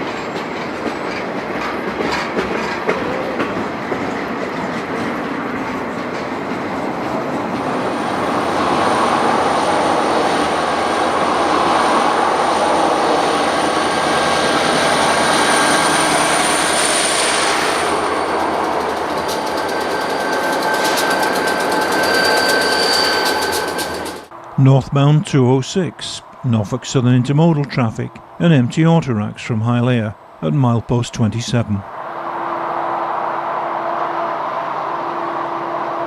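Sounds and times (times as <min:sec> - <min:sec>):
train wheels rolling on rails: 0:00.0 - 0:24.6
high wheel squeal: 0:08.7 - 0:24.3.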